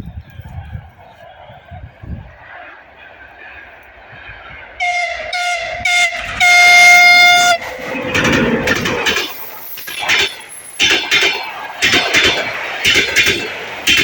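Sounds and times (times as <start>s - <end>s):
train rumbling past: 0.0s - 14.0s
locomotive horn blasts: 4.8s - 7.6s.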